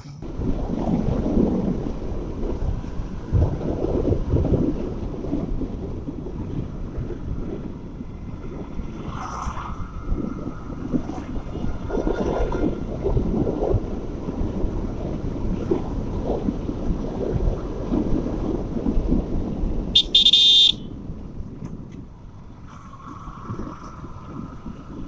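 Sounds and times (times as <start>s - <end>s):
motorcycle road and wind rumble: 0.0s - 25.0s
vehicle horn honking: 20.0s - 20.9s.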